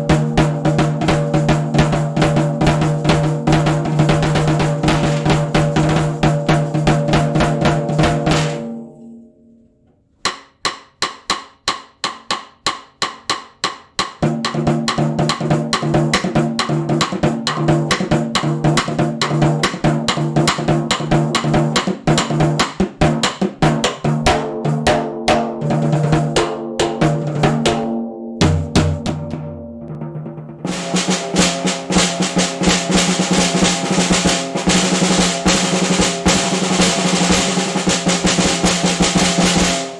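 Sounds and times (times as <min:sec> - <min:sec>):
snare drum played with sticks: 0:00.0 - 0:08.9, 0:10.2 - 0:39.9.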